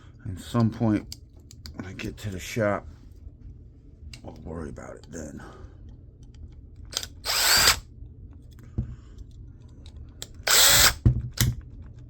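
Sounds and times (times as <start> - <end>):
power screwdriver spinning: 7.0 - 7.8, 10.4 - 11.0.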